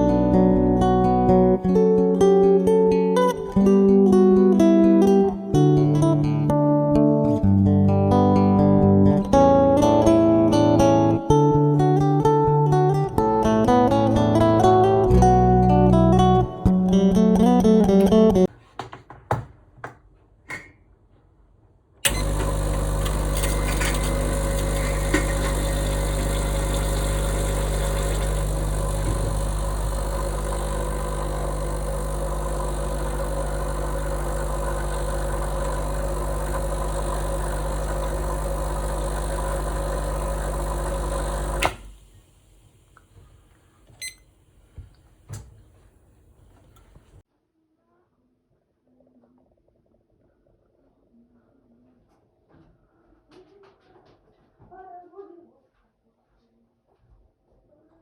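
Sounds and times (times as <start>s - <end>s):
coffee appliance humming: 22.0s - 44.2s.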